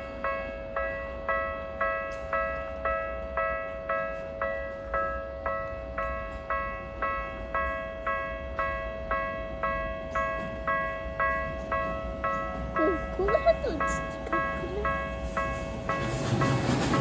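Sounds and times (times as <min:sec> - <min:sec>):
level-crossing warning bell: 0:00.0 - 0:17.0
continuous steady tone: 0:12.6 - 0:15.4.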